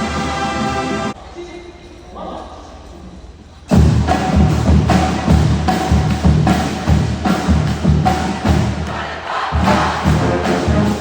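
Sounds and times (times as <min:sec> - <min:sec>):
marching band music: 0:00.0 - 0:01.2, 0:03.7 - 0:11.0
heavy drum strikes: 0:03.7 - 0:11.0
sustained horn notes: 0:09.6 - 0:11.0.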